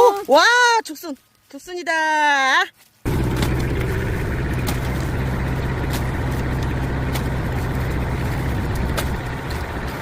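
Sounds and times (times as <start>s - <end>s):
engine idling: 3.1s - 10.0s.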